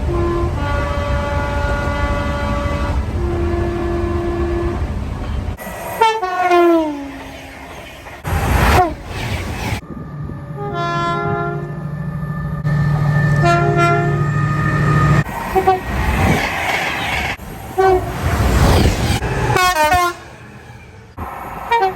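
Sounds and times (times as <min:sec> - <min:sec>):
train horn chord: 0:00.0 - 0:04.8, 0:06.0 - 0:07.2, 0:10.5 - 0:11.8, 0:13.2 - 0:15.8, 0:19.6 - 0:20.2
two-tone train horn: 0:00.0 - 0:04.9, 0:06.0 - 0:07.3, 0:10.5 - 0:11.8, 0:13.1 - 0:15.8, 0:17.8 - 0:18.2, 0:19.5 - 0:20.2, 0:21.7 - 0:21.9
train passing rush: 0:00.0 - 0:21.9.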